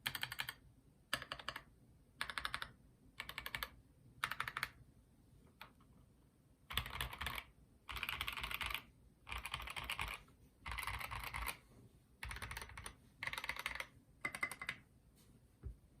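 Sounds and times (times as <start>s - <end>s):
typing on mechanical keyboard: 0.0s - 4.8s, 6.7s - 11.6s, 12.2s - 14.8s.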